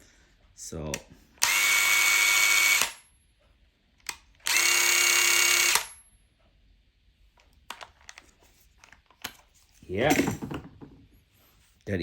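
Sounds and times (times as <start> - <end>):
impact driver whining: 1.4 - 3.0, 4.4 - 6.0.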